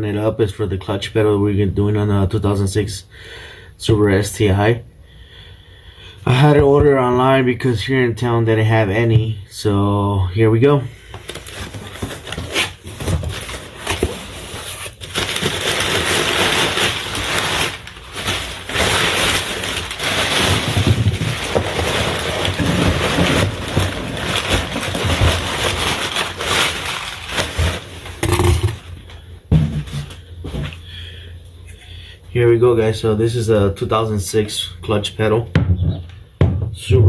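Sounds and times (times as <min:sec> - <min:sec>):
packaging crackling and rustling: 0:11.1 - 0:29.1.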